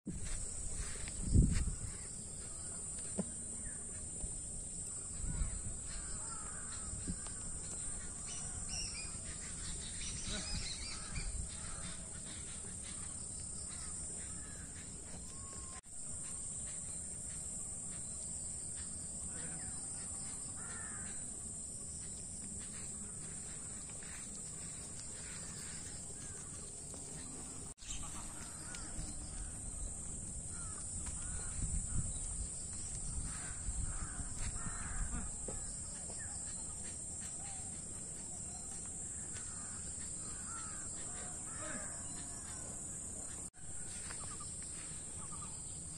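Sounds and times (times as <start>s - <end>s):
crows cawing: 5.9s - 8.7s, 10.6s - 14.8s, 20.5s - 21.2s, 23.0s - 27.0s, 27.8s - 29.6s, 30.5s - 32.0s, 33.2s - 35.7s, 39.2s - 42.6s.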